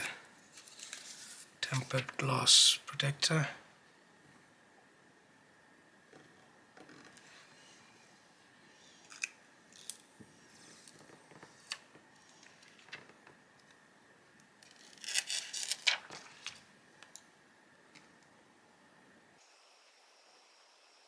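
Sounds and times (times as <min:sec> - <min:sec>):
plastic film crinkling: 0:00.0 - 0:01.9, 0:14.6 - 0:16.6.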